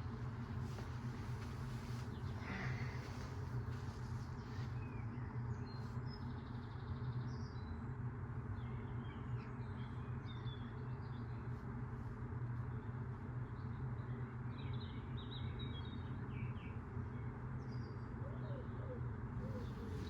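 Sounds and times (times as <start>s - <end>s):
small birds chirping: 0.0s - 7.8s, 19.4s - 20.0s.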